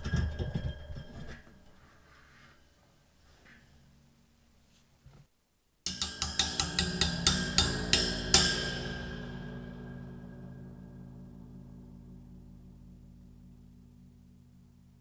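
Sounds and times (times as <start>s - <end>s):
metallic ringing: 0.0s - 1.9s.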